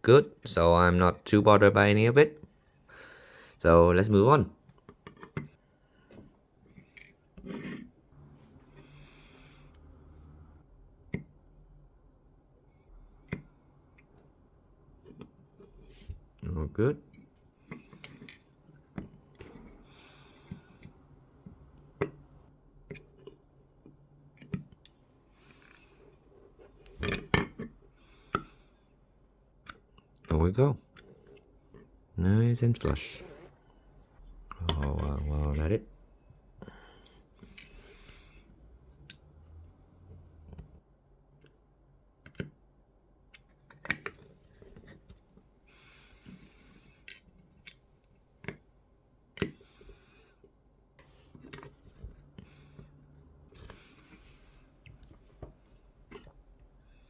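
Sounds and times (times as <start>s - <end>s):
plastic parts clicking and tapping: 42.2s - 42.6s.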